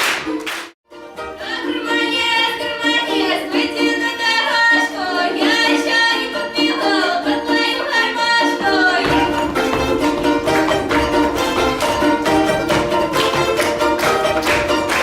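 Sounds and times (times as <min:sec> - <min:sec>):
instrumental accompaniment: 0:00.3 - 0:15.0
woman singing: 0:01.3 - 0:09.5.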